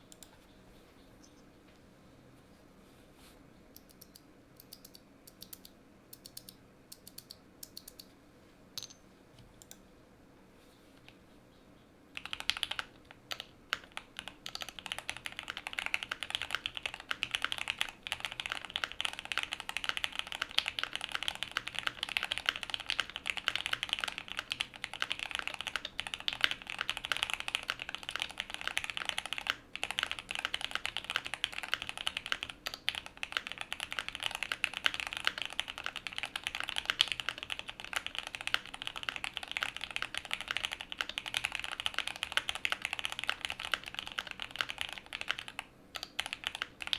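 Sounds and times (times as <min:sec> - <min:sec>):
fast mechanical keyboard typing: 0:12.2 - 0:46.9.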